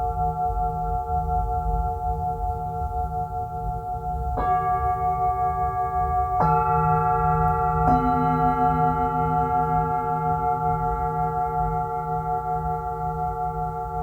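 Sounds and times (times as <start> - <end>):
singing bowls ringing: 4.3 - 14.0.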